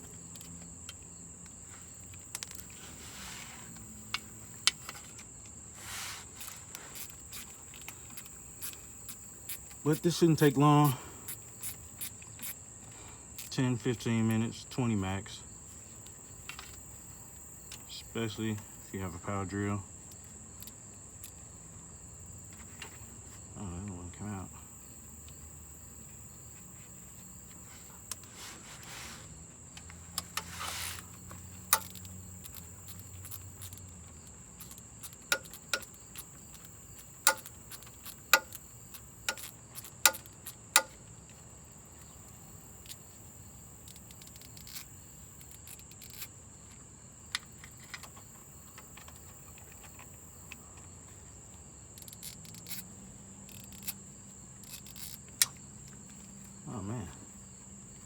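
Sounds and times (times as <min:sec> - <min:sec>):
crickets trilling: 0:00.0 - 0:58.0
metallic clicks of hand tools: 0:30.1 - 0:33.9, 0:34.6 - 0:41.0, 0:53.5 - 0:54.0, 0:54.6 - 0:55.6.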